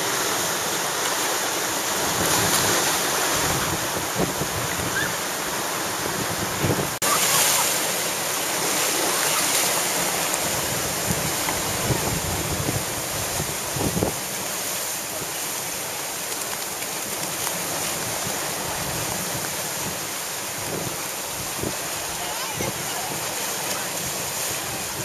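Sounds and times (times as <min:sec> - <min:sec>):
heavy surf breaking waves: 0:00.0 - 0:25.0
wind rumbling on microphone: 0:02.0 - 0:07.4, 0:09.9 - 0:15.3, 0:16.9 - 0:25.0.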